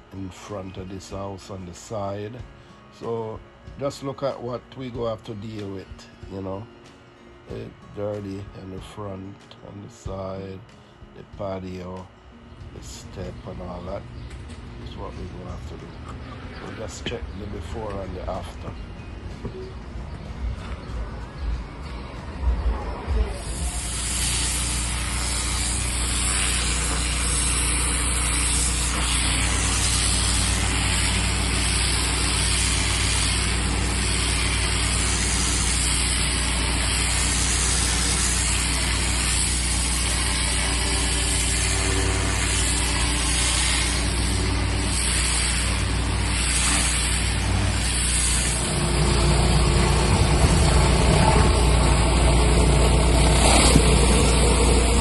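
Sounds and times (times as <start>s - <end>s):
pressure washer engine droning: 9.9s - 55.0s
water spray hissing: 23.2s - 55.0s.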